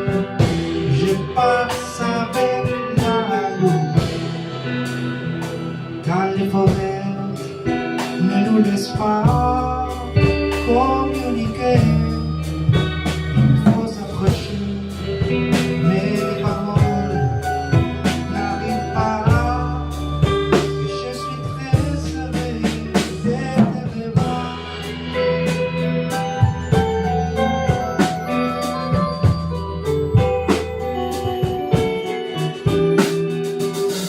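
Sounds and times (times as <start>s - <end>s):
drum kit: 0.0s - 34.0s
keyboards: 0.0s - 34.0s
lead melody with sliding notes: 0.0s - 34.0s
low bass line: 0.0s - 34.0s
rock fusion band playing: 0.0s - 34.0s.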